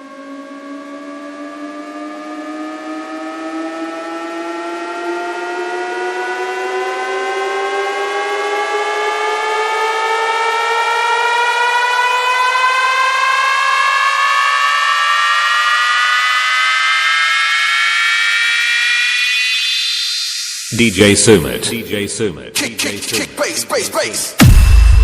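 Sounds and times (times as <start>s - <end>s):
electronic rising warning tone: 14.2s - 21.0s.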